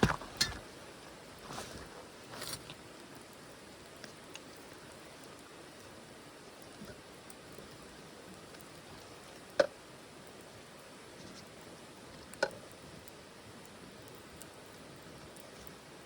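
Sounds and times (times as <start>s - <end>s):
fire crackling pops: 0.0s - 16.0s
wood fire hissing: 0.0s - 16.0s.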